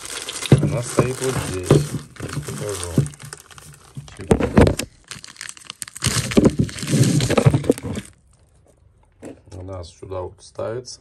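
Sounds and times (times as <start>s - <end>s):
rustling and scraping of handled parts: 0.0s - 4.9s, 6.1s - 9.7s.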